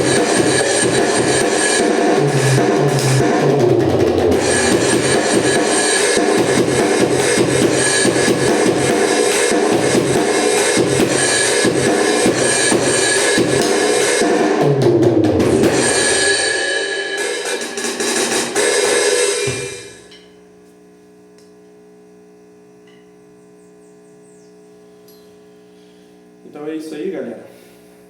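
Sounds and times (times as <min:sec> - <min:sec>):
amplifier mains hum: 0:00.0 - 0:16.4, 0:17.1 - 0:28.0
electronic drum kit beat: 0:00.0 - 0:20.1.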